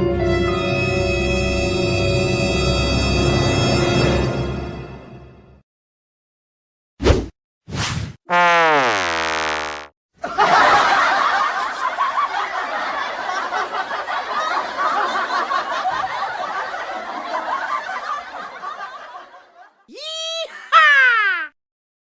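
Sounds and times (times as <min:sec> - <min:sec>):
crowd laughing: 0:10.2 - 0:19.9.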